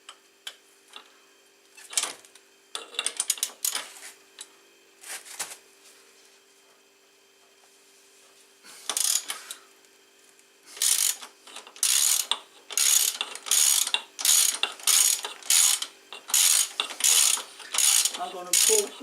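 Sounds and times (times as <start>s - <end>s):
ratchet wrench clicking: 8.9s - 9.4s, 10.8s - 19.0s.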